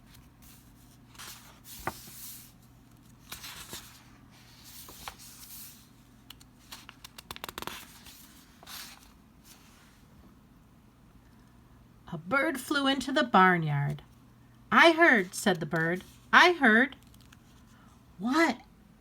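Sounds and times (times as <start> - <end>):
paper pages rustling: 0.0 - 10.0.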